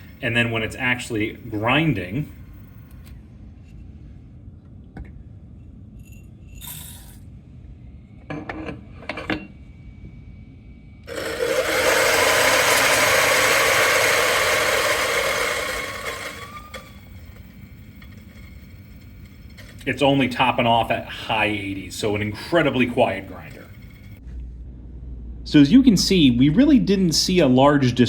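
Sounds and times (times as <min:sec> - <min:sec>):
grinder grinding coffee beans: 0:11.1 - 0:24.2.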